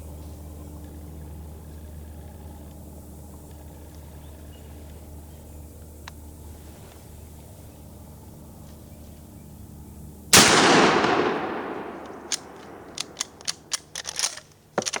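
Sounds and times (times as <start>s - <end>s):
shotgun shot: 10.4s - 13.6s.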